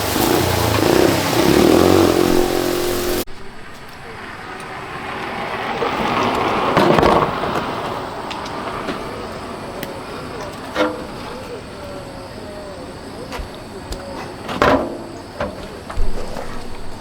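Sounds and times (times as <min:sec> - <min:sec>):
motor running: 0:00.0 - 0:03.3
engine-like noise: 0:00.0 - 0:17.0.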